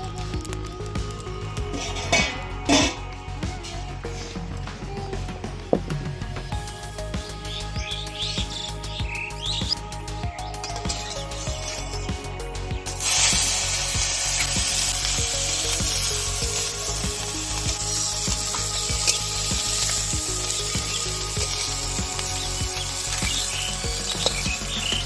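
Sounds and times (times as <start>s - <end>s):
food sizzling in hot oil: 10.7s - 25.0s.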